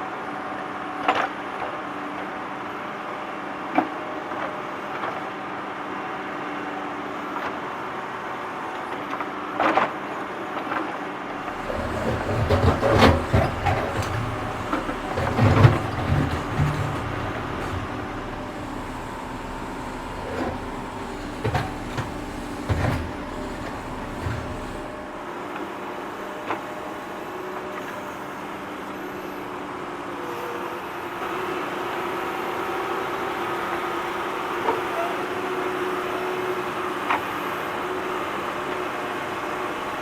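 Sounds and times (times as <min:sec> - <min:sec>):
tractor engine running: 0:11.4 - 0:25.2
sharp clanks and knocks: 0:11.5 - 0:25.0.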